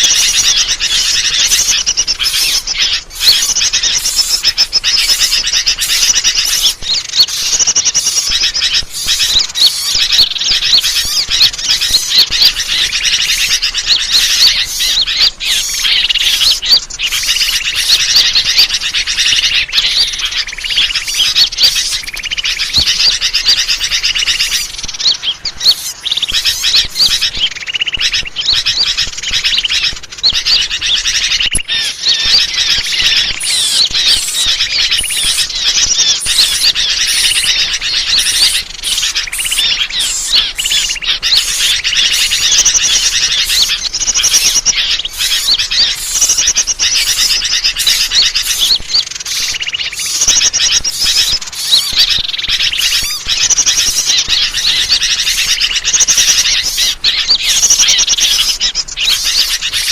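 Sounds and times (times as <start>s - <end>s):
songbirds chirping: 0.0s - 59.9s.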